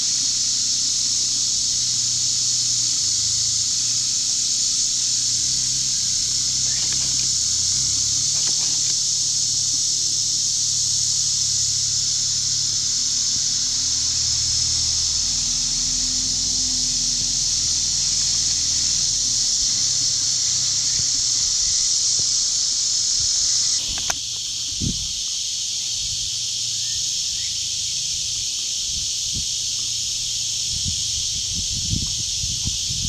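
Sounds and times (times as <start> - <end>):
insects chirring: 0.0 - 33.0
tractor engine hum: 5.0 - 9.1, 11.4 - 21.8
brief click: 23.8 - 24.2.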